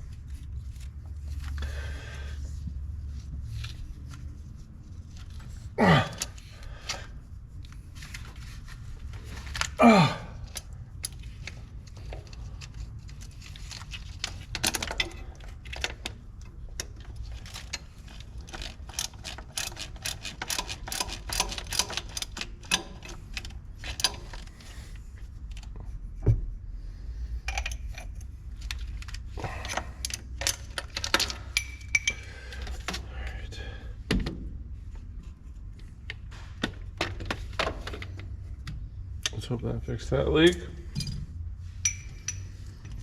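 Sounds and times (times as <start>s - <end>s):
steady low hum: 0.0s - 20.3s
hand tools clinking on metal: 41.8s - 42.6s.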